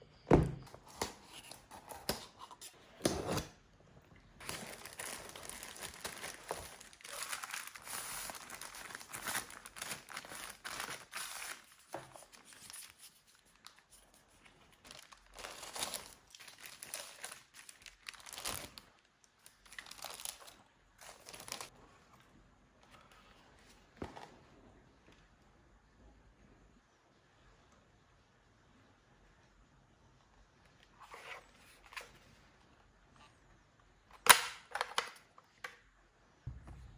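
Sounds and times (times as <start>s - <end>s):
packaging crinkling and tearing: 4.4s - 21.7s.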